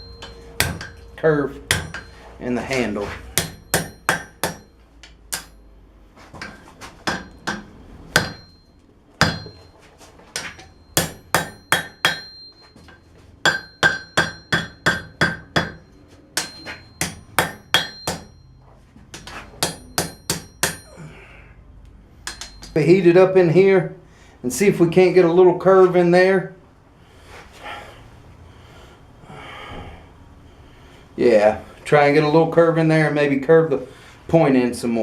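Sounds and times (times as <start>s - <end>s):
hammer striking steel on anvil: 0.0s - 5.7s, 6.4s - 9.7s, 10.4s - 18.5s, 19.1s - 21.0s, 22.2s - 22.8s.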